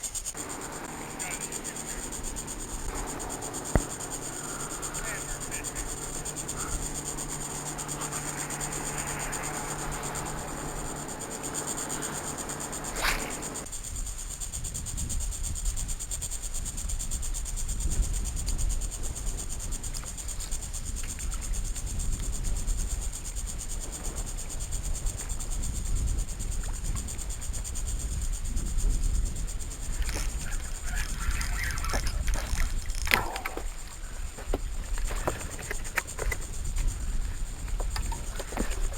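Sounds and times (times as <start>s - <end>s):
insects buzzing: 0.0s - 38.9s
wind rumbling on microphone: 0.0s - 38.9s
low hum: 0.3s - 13.6s.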